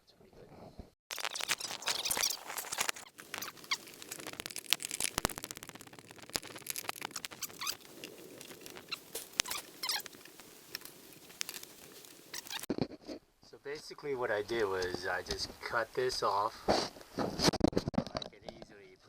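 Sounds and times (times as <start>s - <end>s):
objects being moved by hand: 1.1s - 13.2s.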